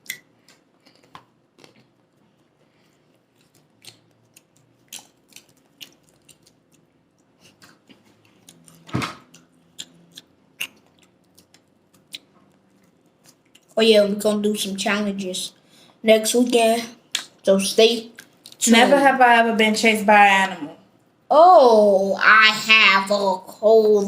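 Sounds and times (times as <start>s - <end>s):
people chewing food: 0.0s - 13.8s, 17.0s - 18.8s.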